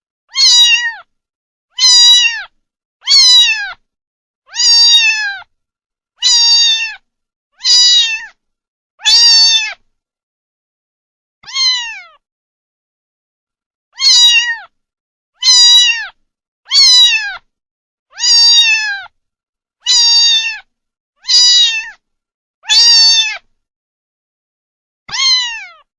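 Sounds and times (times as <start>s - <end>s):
kitten meowing: 0.3s - 1.1s, 1.7s - 3.8s, 4.5s - 5.5s, 6.2s - 7.0s, 7.6s - 8.4s, 9.0s - 9.8s, 11.4s - 12.2s, 14.0s - 14.7s, 15.4s - 17.5s, 18.1s - 19.1s, 19.8s - 22.0s, 22.6s - 23.5s, 25.1s - 25.9s.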